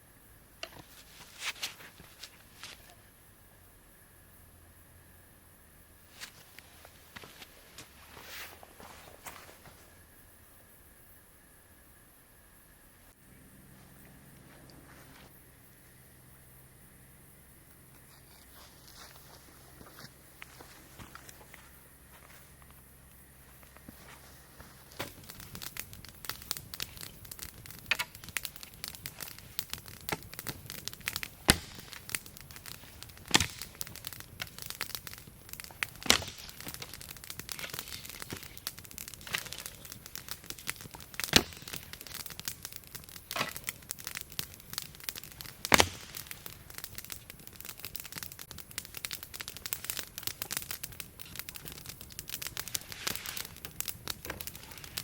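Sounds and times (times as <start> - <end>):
campfire crackling: 0.0 - 11.7, 13.1 - 55.0
sharp pops of fire: 6.1 - 9.7, 22.6 - 55.0.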